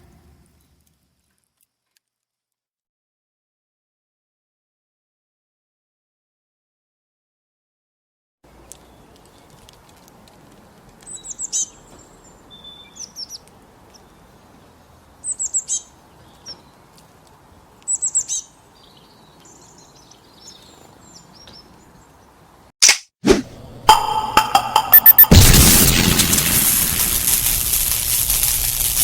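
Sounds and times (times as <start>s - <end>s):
songbird singing: 8.5s - 22.6s
sudden loud burst: 24.1s - 29.0s.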